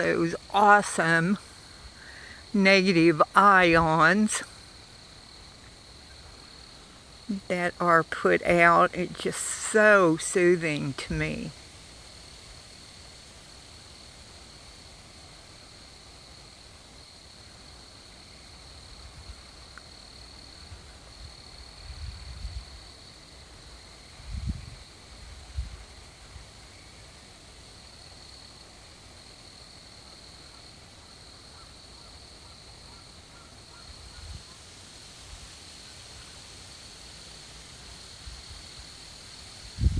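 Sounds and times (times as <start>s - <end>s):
night insects trilling: 0.0s - 39.9s
wind on microphone: 21.8s - 22.8s, 24.2s - 25.9s, 39.6s - 39.9s.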